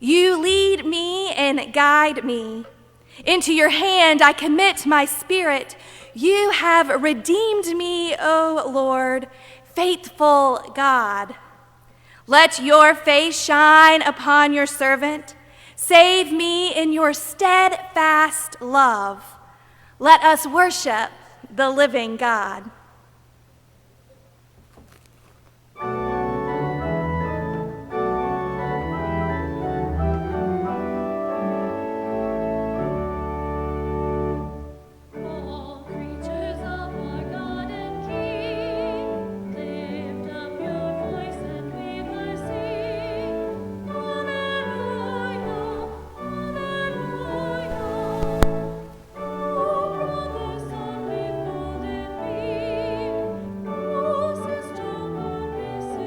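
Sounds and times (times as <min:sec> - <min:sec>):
organ chords: 0:25.8 - 0:56.0
person singing with vibrato: 0:35.2 - 0:56.0.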